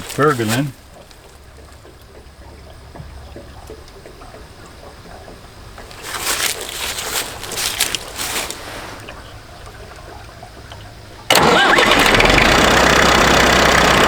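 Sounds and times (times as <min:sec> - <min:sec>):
coolant gurgling: 0:00.0 - 0:14.0
tractor engine running: 0:00.0 - 0:14.0
loud rushing hiss: 0:06.1 - 0:09.2.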